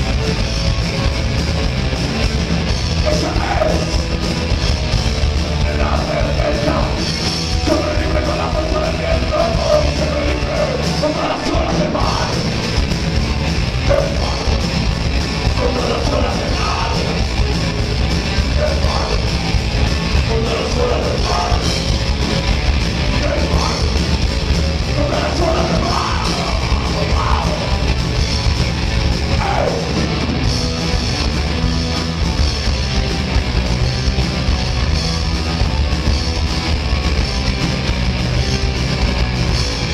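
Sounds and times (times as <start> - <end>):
drums: 0.0 - 39.9
heavy metal band playing live: 0.0 - 39.9
loud dense guitars: 0.0 - 39.9
person singing: 5.6 - 12.5, 15.6 - 17.3, 18.5 - 19.3, 20.2 - 21.8, 23.1 - 24.1, 24.9 - 27.9.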